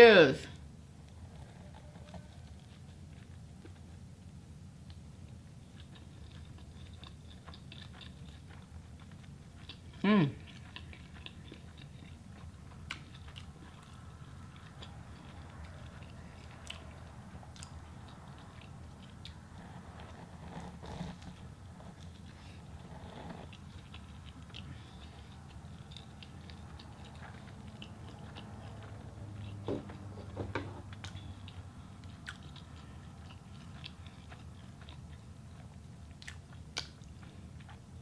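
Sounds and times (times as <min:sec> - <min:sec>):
low steady hum: 0:00.0 - 0:38.0
person chewing and biting food: 0:04.8 - 0:38.0.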